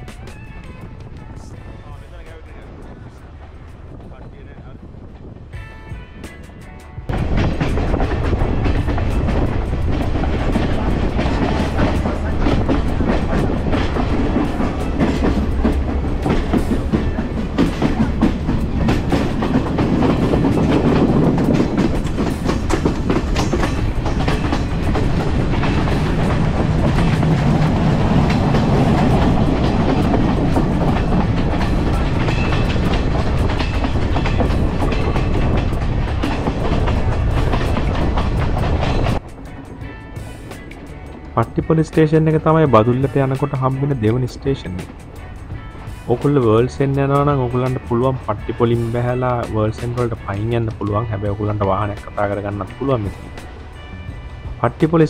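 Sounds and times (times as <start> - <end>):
train rumbling on track: 0.0 - 55.0
wheels clattering over rail joints: 7.1 - 42.4.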